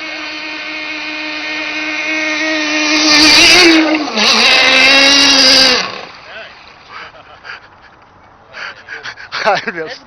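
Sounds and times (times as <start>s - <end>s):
model boat engine buzzing: 0.0s - 7.4s.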